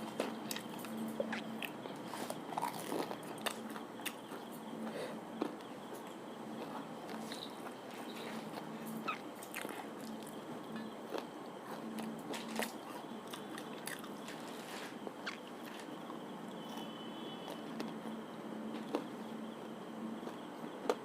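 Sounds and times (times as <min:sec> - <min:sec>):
person chewing: 0:00.0 - 0:04.5, 0:05.4 - 0:16.1
sharp crunches: 0:00.1 - 0:04.5.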